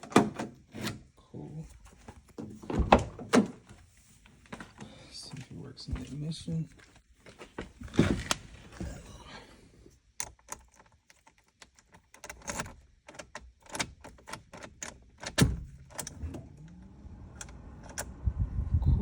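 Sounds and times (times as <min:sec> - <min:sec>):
key clicking in ignition lock: 0:10.2 - 0:16.2.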